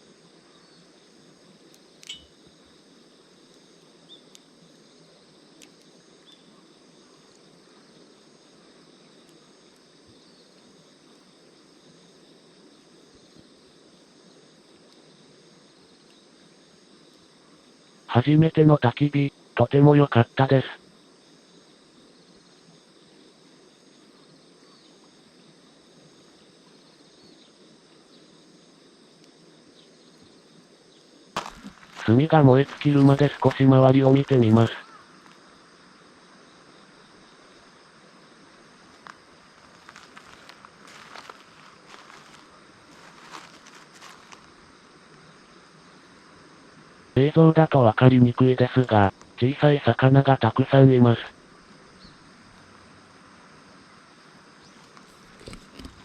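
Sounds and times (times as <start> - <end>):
insects humming: 0.0 - 56.0
fire crackling pops: 1.6 - 2.3, 5.5 - 6.4, 31.3 - 35.4.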